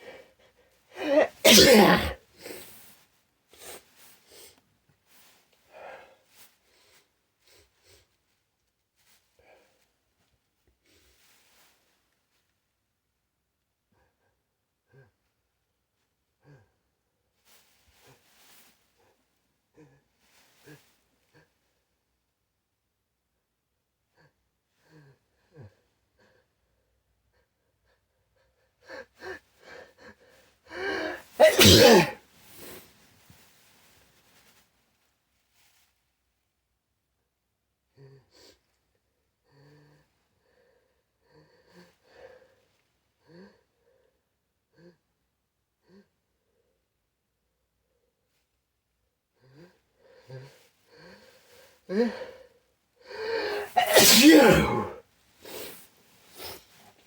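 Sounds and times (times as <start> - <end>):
person gasping breathily: 1.0 - 2.2, 30.7 - 32.2, 53.1 - 55.0
person sneezing: 1.0 - 2.6, 30.7 - 32.2, 53.1 - 55.7
quiet breaths: 2.3 - 12.2, 37.9 - 47.0, 49.2 - 53.8.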